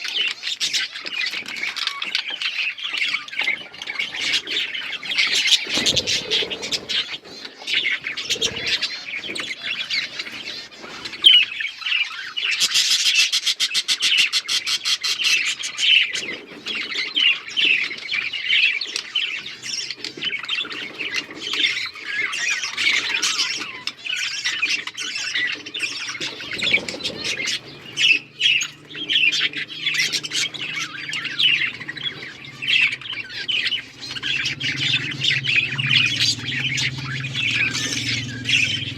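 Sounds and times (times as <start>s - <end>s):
parrots chirping and squawking: 0.0s - 38.9s
low steady hum: 26.9s - 38.9s.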